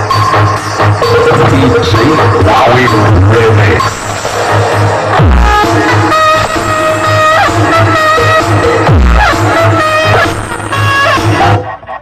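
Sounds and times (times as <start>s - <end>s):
electronic dance music: 0.0s - 12.0s
deep bass hit: 1.0s - 9.3s.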